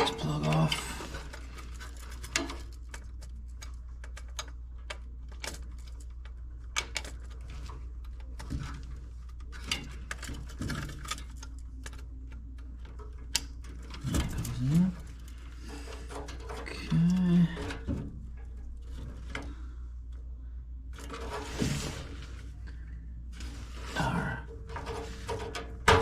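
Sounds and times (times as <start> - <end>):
wire connectors clicking: 0.0 - 20.3
steady low hum: 0.0 - 26.0.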